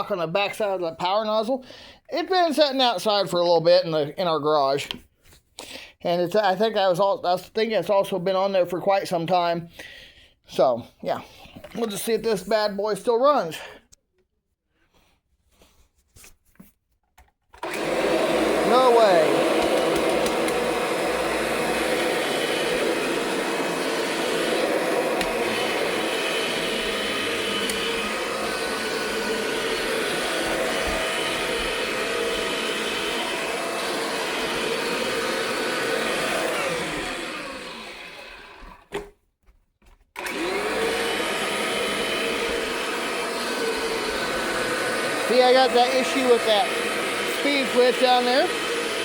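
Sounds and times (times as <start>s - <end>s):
vacuum cleaner motor running: 17.6s - 39.0s, 40.2s - 49.0s.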